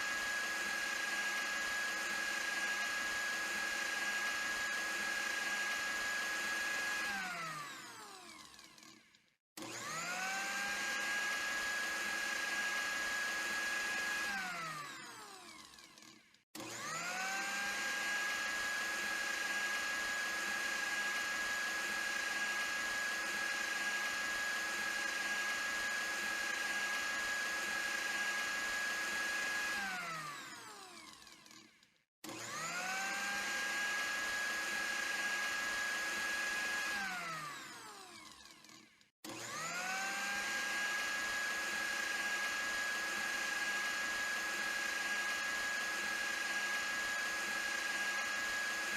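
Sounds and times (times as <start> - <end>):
blender motor whining: 0.0 - 48.9.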